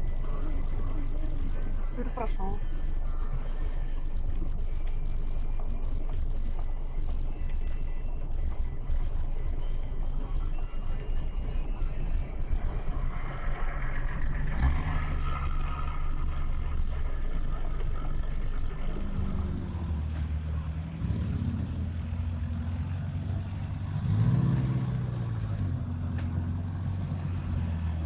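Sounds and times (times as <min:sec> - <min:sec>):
pickup truck engine revving: 0:11.4 - 0:28.0.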